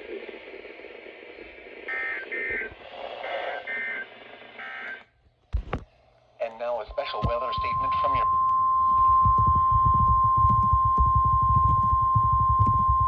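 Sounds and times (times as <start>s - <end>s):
warbling digital data bursts: 0.0s - 4.3s, 7.0s - 13.0s
radio static hiss: 0.0s - 5.0s, 6.4s - 10.4s.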